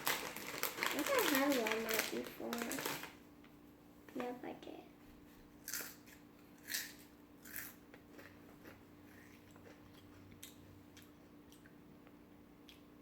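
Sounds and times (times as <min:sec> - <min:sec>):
potato chip crunching: 0:00.0 - 0:03.1, 0:05.6 - 0:11.7.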